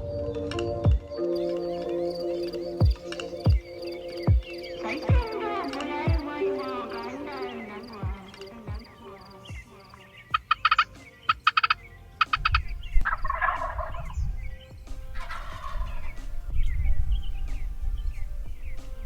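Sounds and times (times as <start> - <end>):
turkey gobbling: 1.8 - 18.8
low rumble: 12.4 - 15.2.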